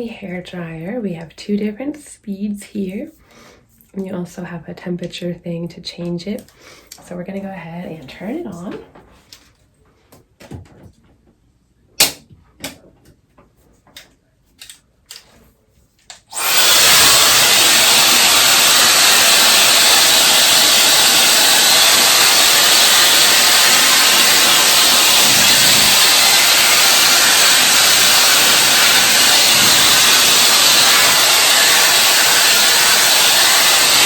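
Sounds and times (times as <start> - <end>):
hair dryer blowing air: 16.3 - 34.0.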